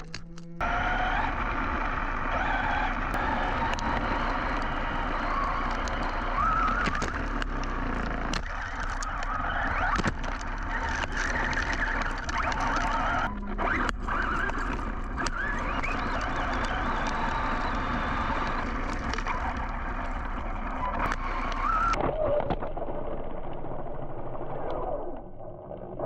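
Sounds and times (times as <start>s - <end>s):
electric motor whining: 0.0s - 22.0s
tyres churning dirt: 0.0s - 22.0s
sharp knocks and clicks: 2.9s - 22.0s.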